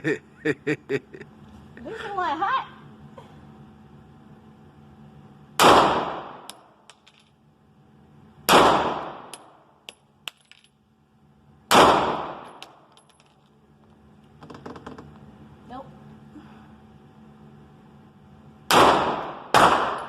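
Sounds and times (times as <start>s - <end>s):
echoing gunshots: 5.6s - 6.5s, 8.5s - 9.4s, 11.7s - 12.6s, 18.7s - 20.0s.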